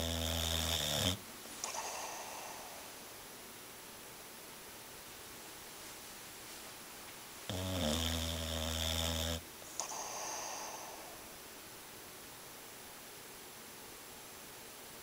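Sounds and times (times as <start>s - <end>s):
dog snoring: 0.0s - 2.9s, 7.5s - 11.2s
airy breath through cheeks: 1.6s - 3.0s, 9.8s - 11.2s.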